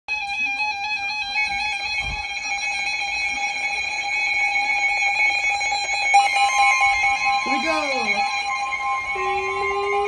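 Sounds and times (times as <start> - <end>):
electronic alarm tones: 2.0 - 10.0.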